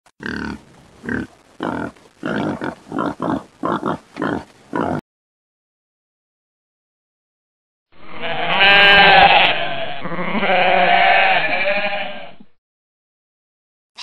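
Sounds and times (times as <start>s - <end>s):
farm animal grunting: 0.2s - 5.0s.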